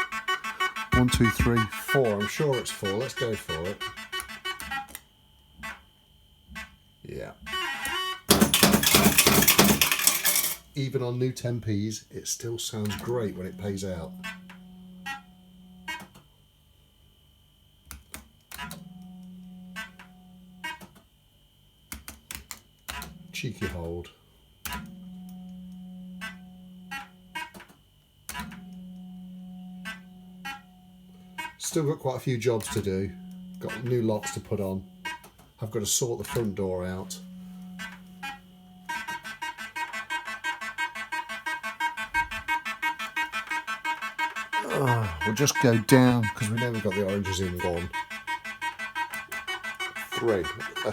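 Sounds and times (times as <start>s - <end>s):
fruit machine beeping notes: 0.0s - 4.9s, 36.8s - 50.9s
low electronic tones: 0.0s - 5.0s, 12.7s - 16.0s, 28.3s - 39.8s, 40.8s - 50.9s.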